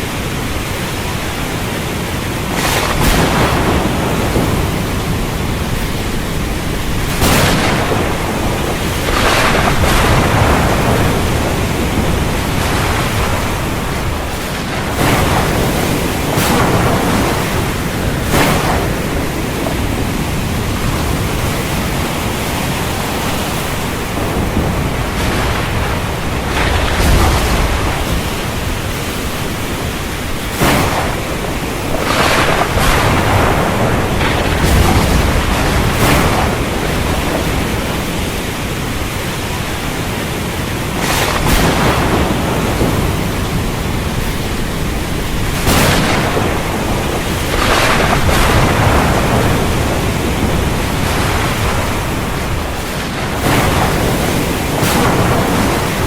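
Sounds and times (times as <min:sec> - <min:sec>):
wind and surf rushing: 0:00.0 - 0:56.0
sharp cracks: 0:02.5 - 0:20.4, 0:30.4 - 0:38.6, 0:41.0 - 0:56.0.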